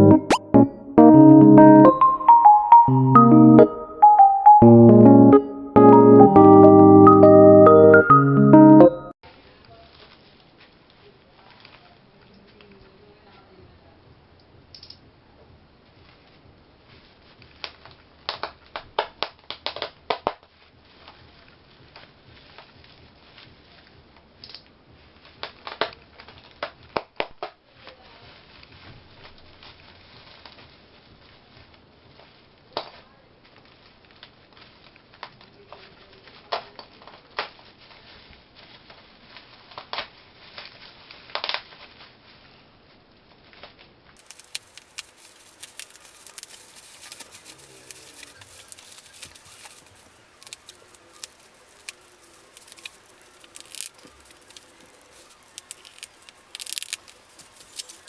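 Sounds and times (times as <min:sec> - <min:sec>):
packaging tearing: 0:44.2 - 0:58.0
packaging wrap crinkling: 0:44.2 - 0:58.0.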